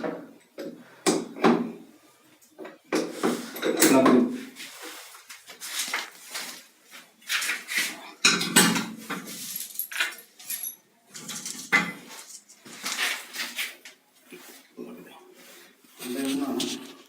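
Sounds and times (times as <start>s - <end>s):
hard objects clattering and scraping: 11.1s - 14.7s.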